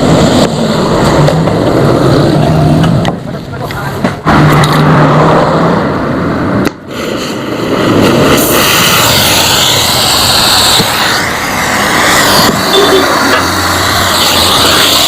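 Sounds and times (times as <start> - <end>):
angle grinder on steel: 8.7 - 15.0.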